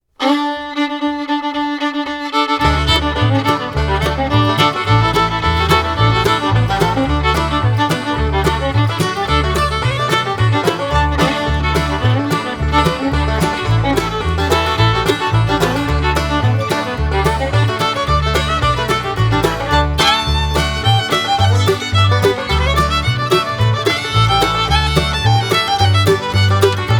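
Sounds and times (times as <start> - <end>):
instrumental background music: 2.6 - 26.9.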